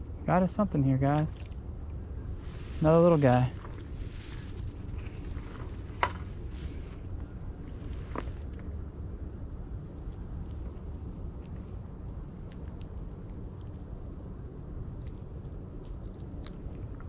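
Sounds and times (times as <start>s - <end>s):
insects singing: 0.0s - 5.8s, 9.5s - 15.6s.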